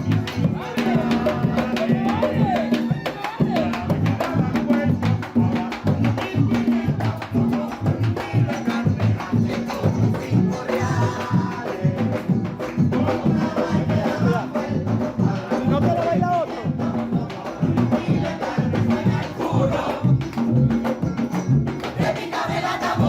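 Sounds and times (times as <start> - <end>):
friction drum beat: 0.0 - 23.0
rattling percussion: 0.0 - 23.0
voices singing: 0.0 - 23.0.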